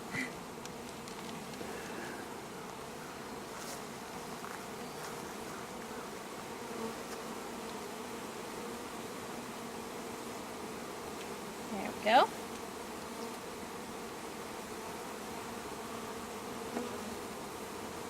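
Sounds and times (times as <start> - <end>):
honeybees buzzing: 0.0 - 18.0.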